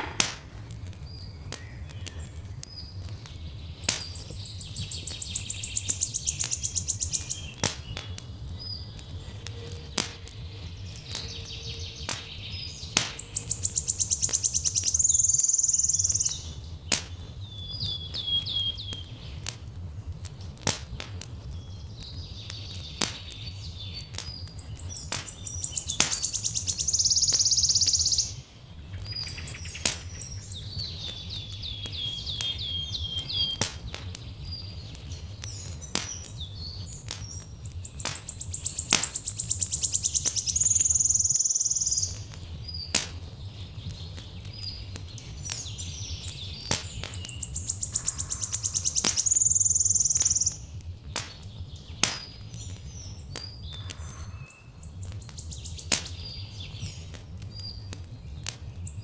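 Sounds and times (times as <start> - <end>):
wood fire crackling and popping: 0.0 - 59.0
buzzy bird trill: 13.2 - 16.6, 24.9 - 28.4, 37.8 - 42.8, 47.2 - 50.7
short bird chirps: 24.9 - 28.4, 45.4 - 50.6.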